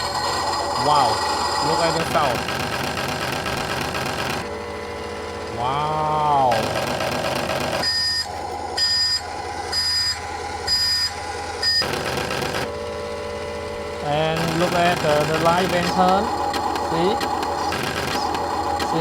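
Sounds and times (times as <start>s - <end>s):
steady electronic hum: 0.0s - 19.0s
high electronic beeps: 7.8s - 11.9s.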